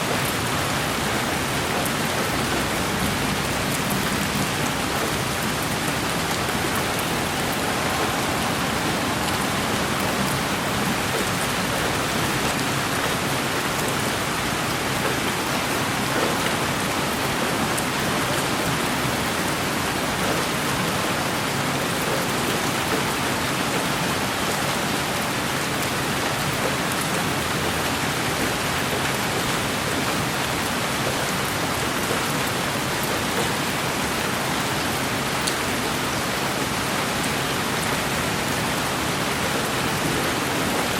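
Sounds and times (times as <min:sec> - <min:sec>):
steady rain hiss: 0:00.0 - 0:40.9
faint raindrop ticks: 0:35.4 - 0:35.6.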